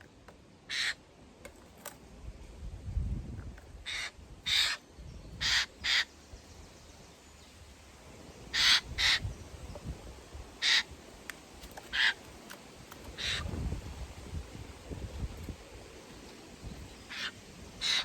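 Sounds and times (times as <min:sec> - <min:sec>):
jays rasping calls: 0:00.7 - 0:01.0, 0:03.8 - 0:04.8, 0:05.4 - 0:06.2, 0:08.5 - 0:09.3, 0:10.6 - 0:11.1, 0:11.8 - 0:12.4, 0:13.0 - 0:13.6, 0:17.0 - 0:18.0.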